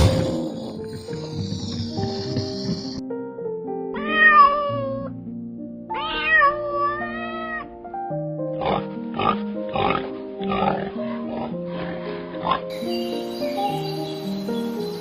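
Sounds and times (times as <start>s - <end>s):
background music: 0.0s - 15.0s
cat meowing: 4.0s - 5.1s, 5.9s - 7.8s.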